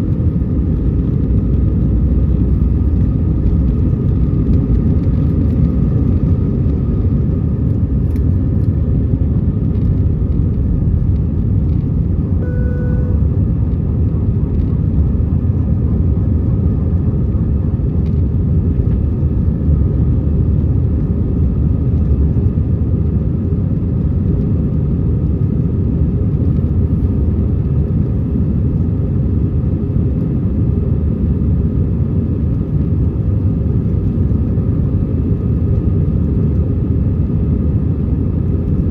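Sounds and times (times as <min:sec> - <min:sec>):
airplane engine rumble in cabin: 0:00.0 - 0:38.9
short tone: 0:12.4 - 0:13.4.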